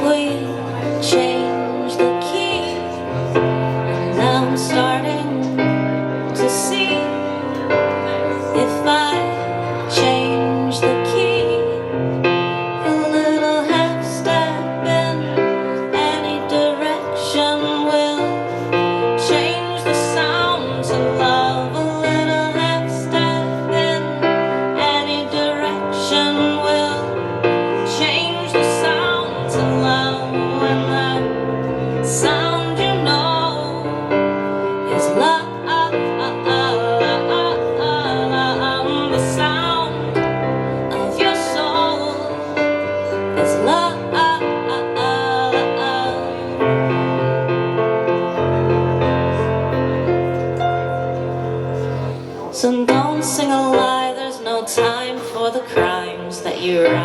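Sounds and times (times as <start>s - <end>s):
woman singing: 0.0s - 47.4s, 52.4s - 57.0s
keyboard playing piano chords: 0.0s - 57.0s.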